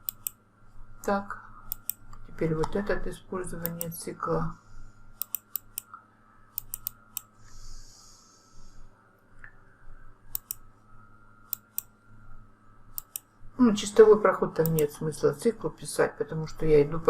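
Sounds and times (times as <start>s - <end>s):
computer mouse clicks: 0.0s - 0.4s, 1.7s - 2.8s, 3.6s - 4.0s, 5.2s - 7.6s, 10.3s - 10.7s, 11.5s - 11.9s, 12.9s - 13.3s, 14.6s - 15.0s
faint steady hum: 0.0s - 17.0s
soft hiss: 0.1s - 15.0s.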